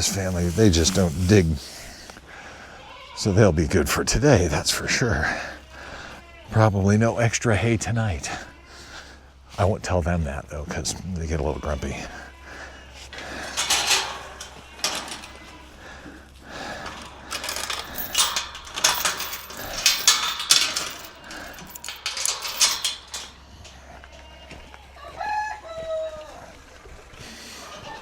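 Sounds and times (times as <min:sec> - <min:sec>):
hay rustling and clattering: 0:00.0 - 0:01.8.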